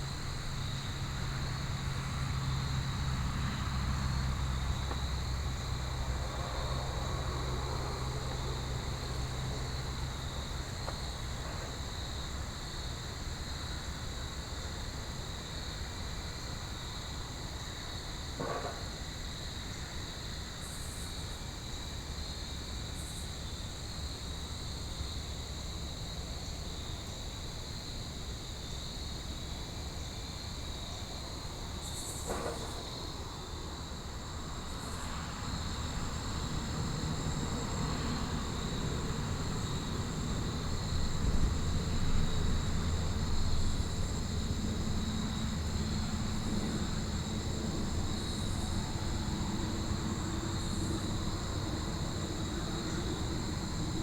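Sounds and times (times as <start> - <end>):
crickets chirring: 0.0 - 54.0
distant vehicle engine rumble: 34.6 - 54.0.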